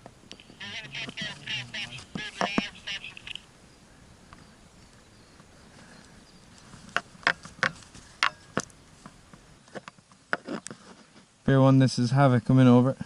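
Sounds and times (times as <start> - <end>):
sharp clicks: 2.1 - 3.5.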